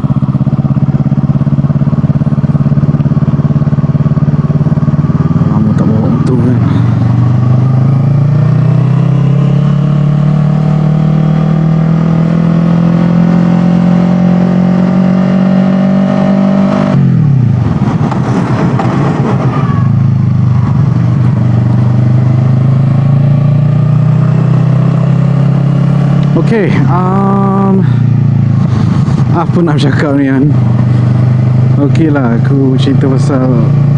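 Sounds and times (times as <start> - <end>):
rush of noise: 16.5 - 21.9, 26.3 - 33.8.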